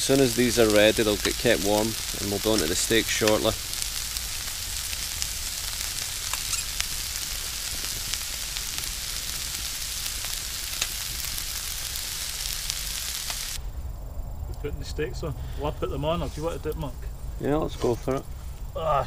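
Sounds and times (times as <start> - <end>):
vegetables sizzling in a pan: 0.0 - 13.6.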